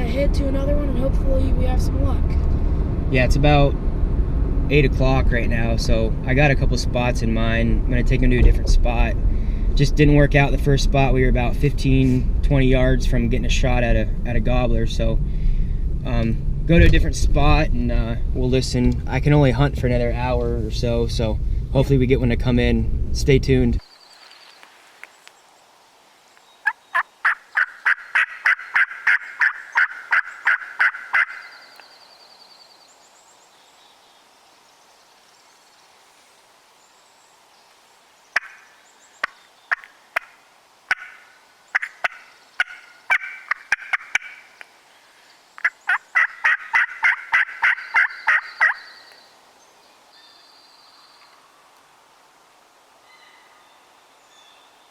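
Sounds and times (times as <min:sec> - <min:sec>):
turkey yelping: 0:26.6 - 0:31.8, 0:38.4 - 0:44.6, 0:45.6 - 0:49.1.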